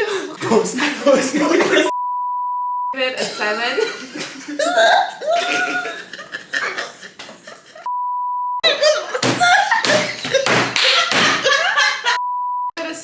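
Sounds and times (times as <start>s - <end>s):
censor bleep tone: 1.9s - 3.0s, 7.9s - 8.6s, 12.2s - 12.8s.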